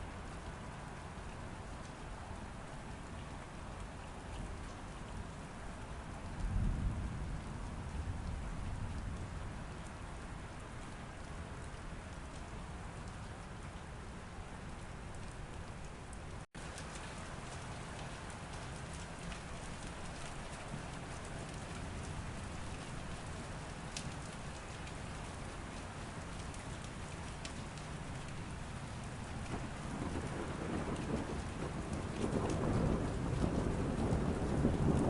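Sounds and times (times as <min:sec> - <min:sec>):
steady rain falling: 0:00.0 - 0:35.0
low rumble of thunder: 0:06.0 - 0:10.6, 0:16.6 - 0:35.0.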